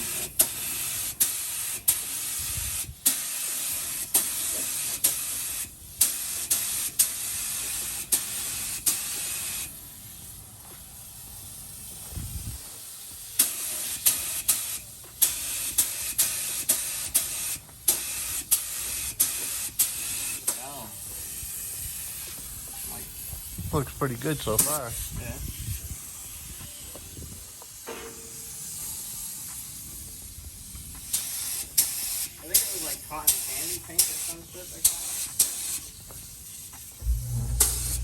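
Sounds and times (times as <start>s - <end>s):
paint spray gun hissing: 0.0s - 10.4s, 13.4s - 20.6s.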